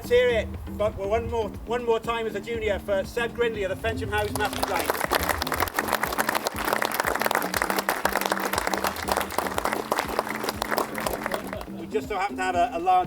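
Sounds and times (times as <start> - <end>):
crowd clapping: 4.2 - 11.8.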